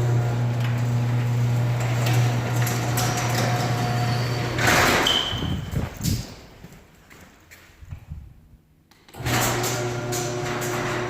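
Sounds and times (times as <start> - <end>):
garage door opener humming: 0.0 - 6.2, 9.1 - 11.0.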